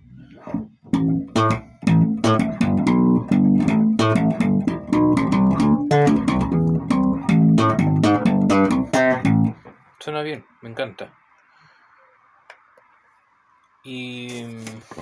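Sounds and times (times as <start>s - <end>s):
electric bass guitar plucked notes: 0.0s - 9.6s.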